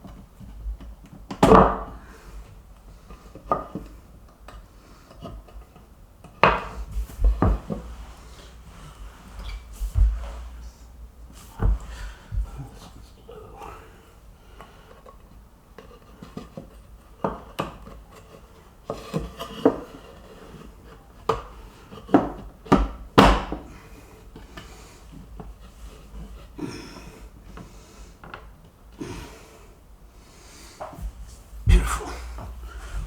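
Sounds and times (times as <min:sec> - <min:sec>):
shuffling: 0:06.8 - 0:13.3, 0:30.6 - 0:33.0.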